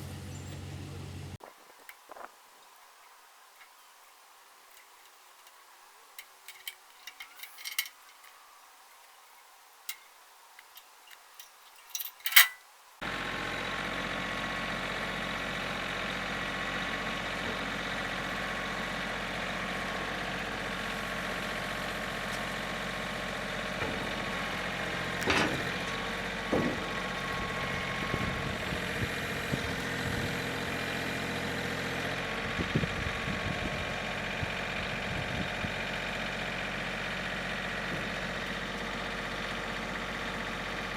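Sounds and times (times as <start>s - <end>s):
engine running steadily: 0.0s - 1.4s, 13.0s - 40.9s
light clicks and knocks: 23.7s - 28.3s.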